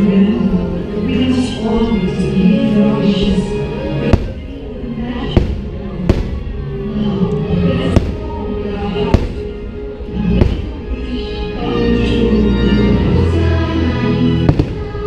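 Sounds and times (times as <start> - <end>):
loud music: 0.0 - 15.0
fireworks bangs: 4.1 - 4.6, 5.3 - 6.6, 7.8 - 10.9, 14.4 - 15.0.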